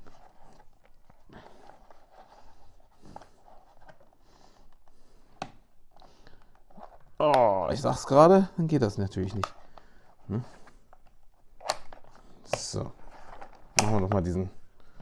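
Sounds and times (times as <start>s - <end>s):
soft rustles: 0.0s - 5.3s.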